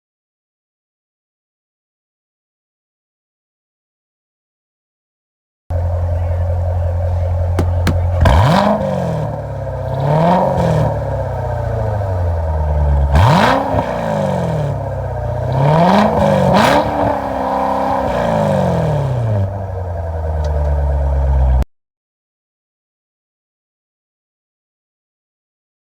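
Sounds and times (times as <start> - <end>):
car engine idling and revving: 5.7 - 21.6.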